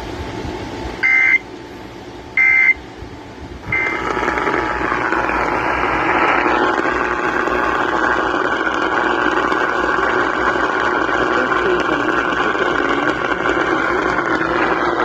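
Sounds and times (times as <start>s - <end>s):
two-tone digital bursts: 1.0s - 1.4s, 2.4s - 2.8s, 3.7s - 4.8s
steady rushing noise: 3.0s - 15.0s.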